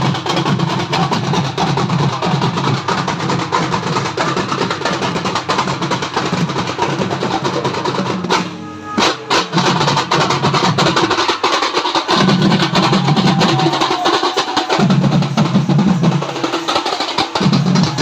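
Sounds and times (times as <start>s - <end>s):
loud music with fast drumming: 0.0s - 18.0s
held tone: 8.3s - 9.8s.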